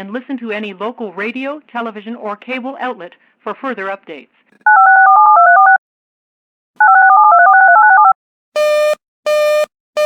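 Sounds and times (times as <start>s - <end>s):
telephone busy signal: 4.7s - 5.8s, 6.8s - 9.7s
telephone touch-tone beeps: 4.7s - 5.8s, 6.8s - 9.7s.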